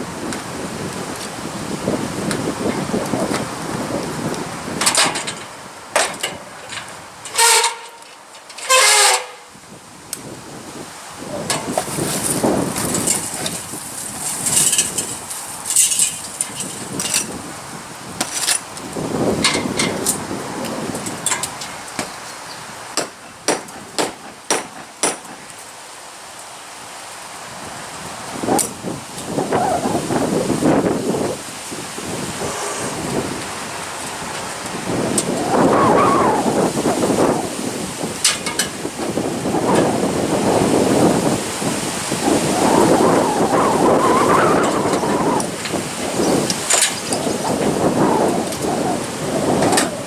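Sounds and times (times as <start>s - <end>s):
short horn-like honks: 7.4s - 8.0s
hammering nails into wood: 23.0s - 25.6s.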